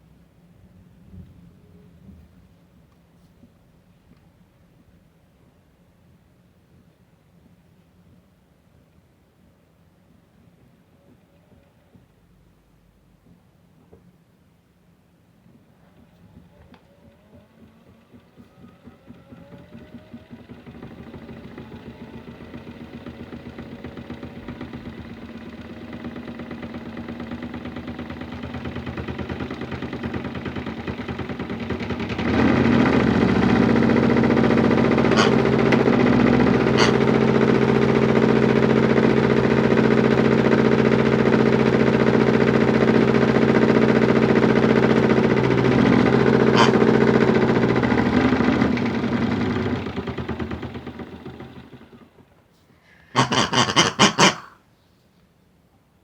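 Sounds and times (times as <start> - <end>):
small electric motor spinning drum: 16.8 - 52.1.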